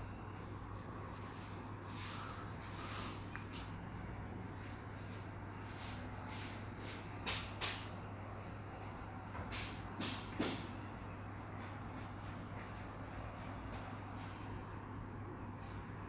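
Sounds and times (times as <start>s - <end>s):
steady low hum: 0.0s - 16.0s
broom sweeping a floor: 1.0s - 3.4s, 4.7s - 8.0s, 9.4s - 10.8s, 15.6s - 16.0s.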